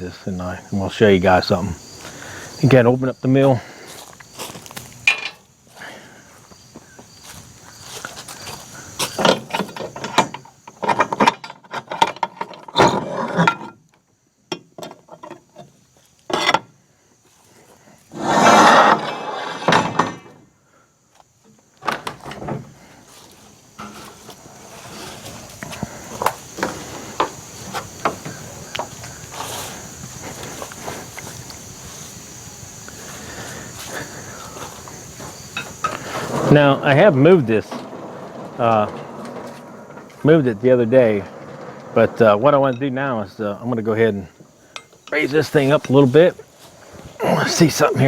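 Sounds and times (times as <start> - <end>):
footsteps: 3.4 - 9.3, 22.8 - 42.3
loud scraping rush: 18.1 - 19.9.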